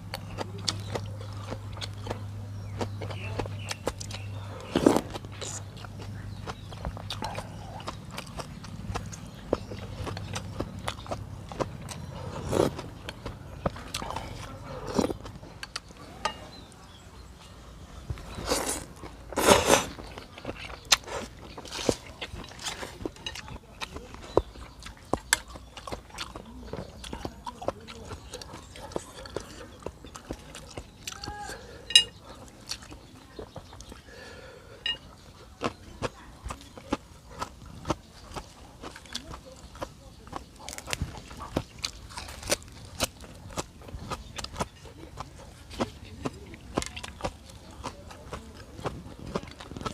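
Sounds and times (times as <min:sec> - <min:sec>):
mouth clicks and chewing: 0:00.0 - 0:49.9
slurping noodles: 0:18.3 - 0:20.0
utensils clinking against bowl: 0:31.9 - 0:32.2, 0:34.8 - 0:35.1.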